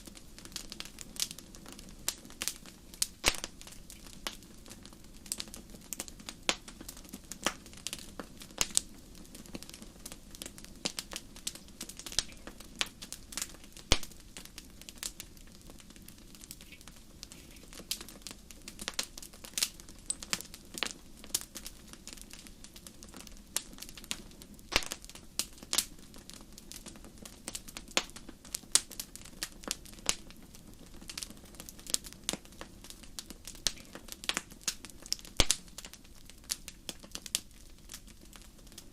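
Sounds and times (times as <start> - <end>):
sharp irregular crackling clicks: 2.1 - 8.0, 10.4 - 14.5, 24.7 - 25.1, 33.6 - 38.0.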